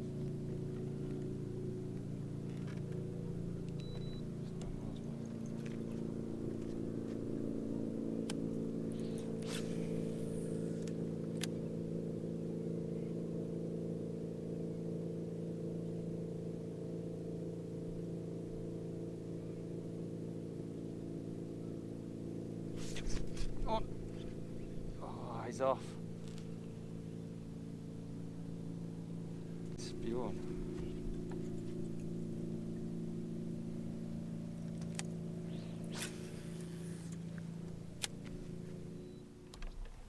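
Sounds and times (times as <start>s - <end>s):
boat motor running: 0.0s - 40.0s.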